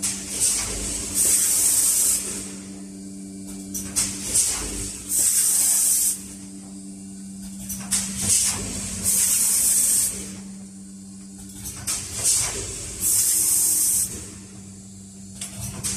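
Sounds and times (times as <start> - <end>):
machine low hum: 0.0 - 15.9
compressed air hiss: 1.2 - 2.4, 5.1 - 6.2, 9.1 - 10.4, 12.2 - 14.3.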